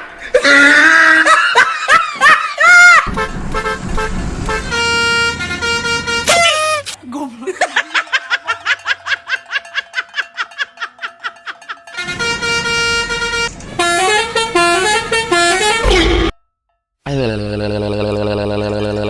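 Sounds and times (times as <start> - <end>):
multi-tone bus horn: 3.1 - 7.0, 12.0 - 16.3.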